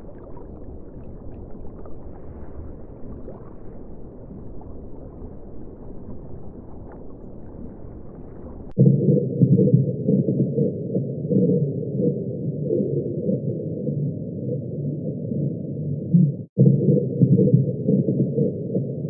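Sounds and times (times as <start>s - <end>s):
underwater water rush: 0.0s - 8.8s
deep muffled rumble: 0.0s - 11.1s.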